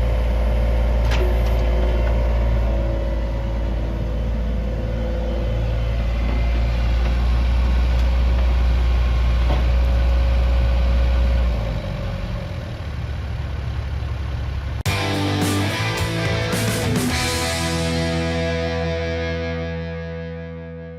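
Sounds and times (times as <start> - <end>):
excavator diesel engine running: 0.0 - 20.0
guitar music: 14.9 - 20.9.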